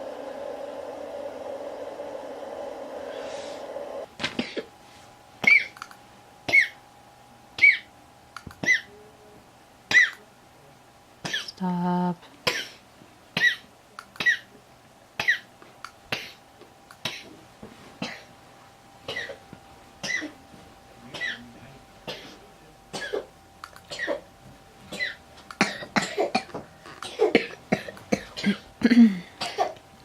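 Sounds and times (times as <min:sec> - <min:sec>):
person coughing: 0:04.3 - 0:04.7, 0:05.4 - 0:05.7, 0:06.5 - 0:06.8, 0:08.6 - 0:09.0, 0:09.9 - 0:10.2, 0:11.3 - 0:11.6, 0:18.0 - 0:18.3, 0:19.1 - 0:19.4, 0:20.0 - 0:20.4, 0:21.1 - 0:21.5, 0:22.1 - 0:23.3, 0:23.9 - 0:24.3, 0:24.9 - 0:29.8
throat clearing: 0:04.3 - 0:04.7, 0:08.6 - 0:09.0, 0:09.9 - 0:10.2, 0:20.0 - 0:20.4, 0:21.1 - 0:21.5, 0:22.1 - 0:23.3, 0:24.9 - 0:29.8.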